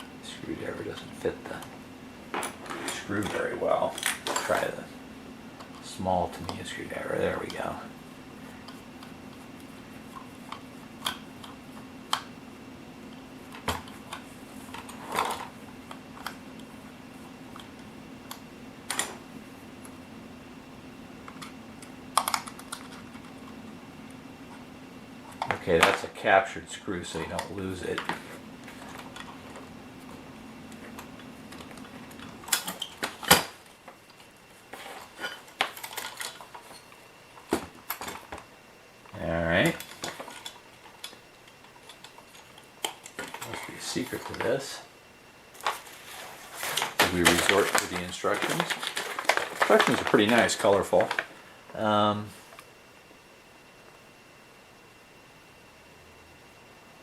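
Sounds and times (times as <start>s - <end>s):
steady low hum: 0.0s - 57.0s
plastic cover being handled: 45.5s - 51.4s.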